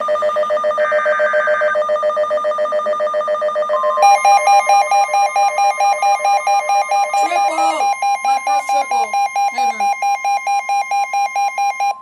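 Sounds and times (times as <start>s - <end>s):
pulsing electronic alarm: 0.0s - 12.0s
warbling alarm: 0.0s - 12.0s
steady attention tone: 3.6s - 12.0s
screechy data burst: 4.0s - 11.8s.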